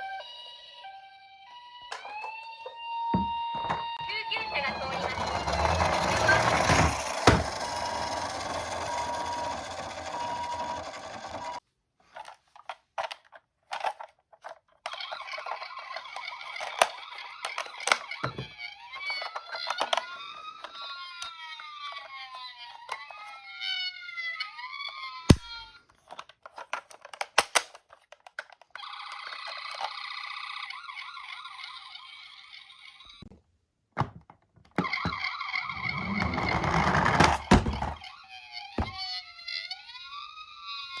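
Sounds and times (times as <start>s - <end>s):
siren wailing: 0.0s - 5.6s.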